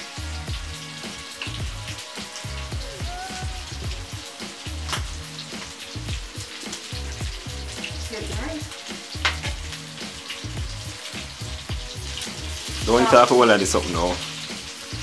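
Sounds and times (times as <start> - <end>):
food sizzling in hot oil: 0.0 - 15.0.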